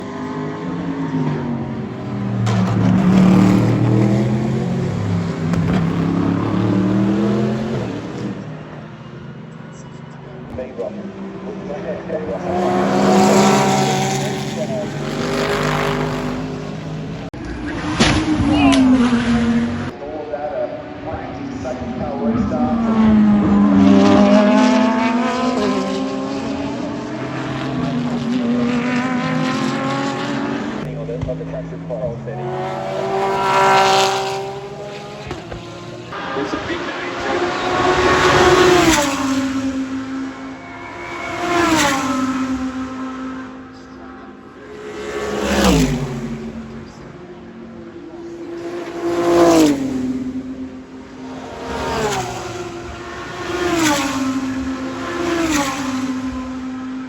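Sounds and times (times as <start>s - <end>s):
race car engine running hard: 0.0s - 57.0s
racing car engine accelerating past: 32.4s - 43.8s.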